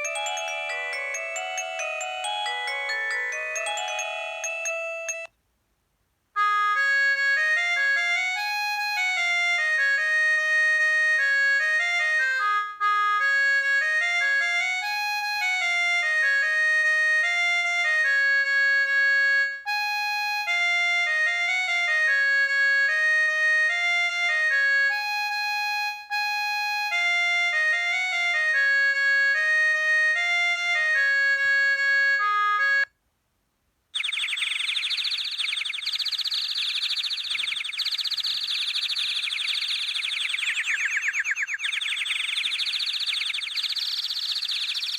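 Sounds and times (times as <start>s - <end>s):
phone ringtone melody: 0.0s - 5.3s, 6.4s - 32.9s.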